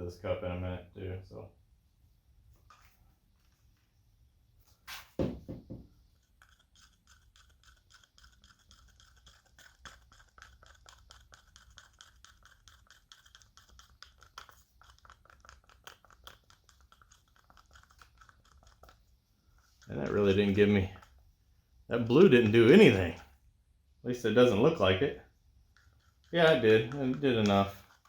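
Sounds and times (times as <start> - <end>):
knock: 5.2 - 5.9
stick scraping mixing cup: 5.9 - 23.4, 24.5 - 28.0.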